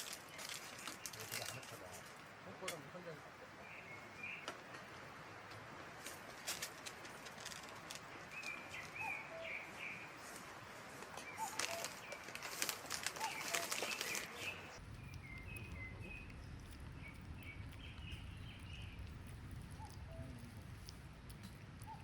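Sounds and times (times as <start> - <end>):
small birds chirping: 0.0 - 22.0
clicks and rustling: 5.5 - 9.0
low steady rumble: 14.7 - 22.0.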